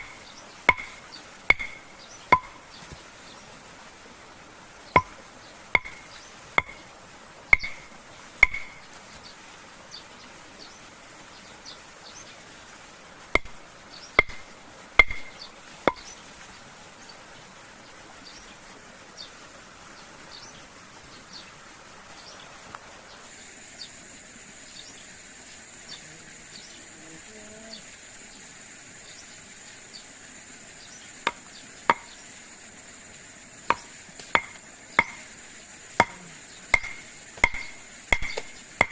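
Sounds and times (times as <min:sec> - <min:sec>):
axe chopping wood: 0:00.0 - 0:03.0, 0:05.0 - 0:05.2, 0:05.8 - 0:06.9, 0:07.5 - 0:08.8, 0:13.4 - 0:13.6, 0:14.2 - 0:16.1, 0:31.3 - 0:32.1, 0:33.7 - 0:35.3, 0:36.0 - 0:38.9
high insect drone: 0:00.0 - 0:03.5, 0:22.1 - 0:38.9.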